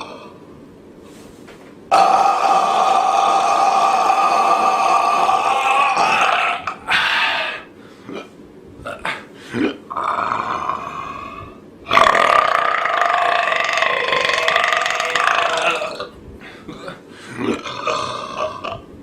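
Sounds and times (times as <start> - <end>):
person belching: 1.9 - 7.6, 8.8 - 11.3, 11.9 - 18.9.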